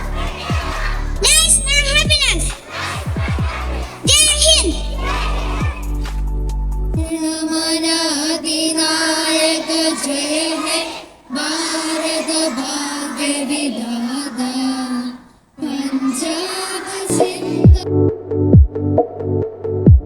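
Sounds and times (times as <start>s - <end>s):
children singing together: 0.0s - 6.4s, 7.0s - 17.8s.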